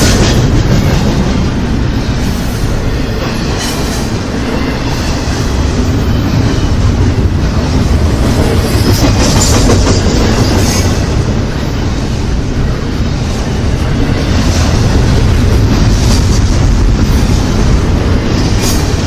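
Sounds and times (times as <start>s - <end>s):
freight train wheels rumbling on rail: 0.0s - 19.0s.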